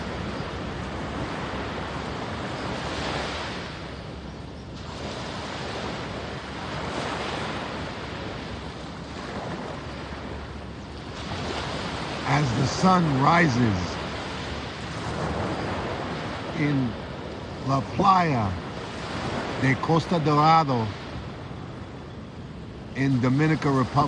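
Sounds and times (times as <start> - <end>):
ocean waves breaking on beach: 0.0 - 24.0
wind on microphone: 0.0 - 24.0.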